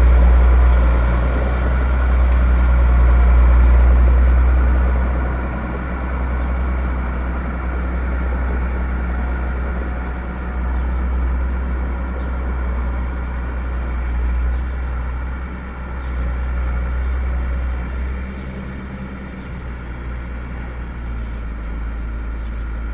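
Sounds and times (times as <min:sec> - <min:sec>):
heavy engine rumbling: 0:00.0 - 0:22.9.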